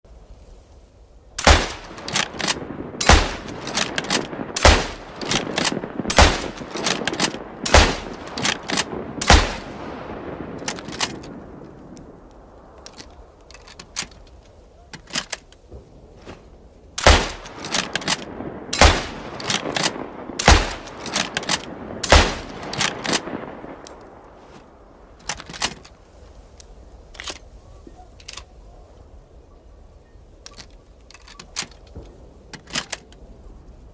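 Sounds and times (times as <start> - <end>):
rifle bolt clicks: 1.4 - 9.7, 10.6 - 11.4, 12.8 - 15.6, 17.0 - 24.0, 25.2 - 26.0, 26.6 - 27.4, 30.4 - 33.2
rifle shots with echo: 1.4 - 12.1, 17.0 - 24.0.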